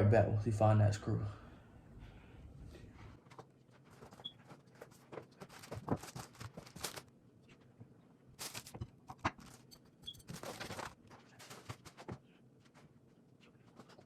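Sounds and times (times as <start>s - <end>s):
rustling scrapes: 8.4s - 8.8s.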